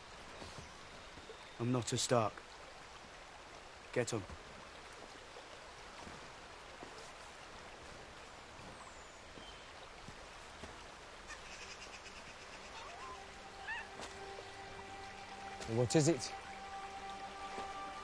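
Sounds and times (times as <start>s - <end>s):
steady outdoor hiss: 0.0s - 18.0s
soft sustained music tones: 11.1s - 18.0s.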